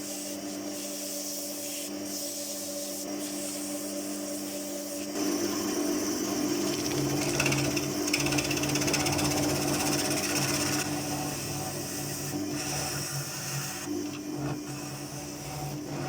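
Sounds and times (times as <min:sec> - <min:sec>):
wood lathe motor hum: 0:05.2 - 0:16.0
tool rattling on spinning wood: 0:06.6 - 0:10.9.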